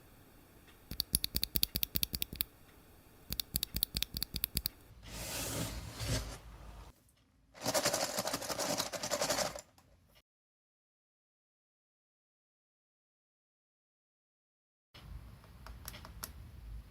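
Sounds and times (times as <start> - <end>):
mechanical keyboard key clicks: 0.9 - 2.5, 3.3 - 4.8
scratchy scraping noise: 5.0 - 6.9.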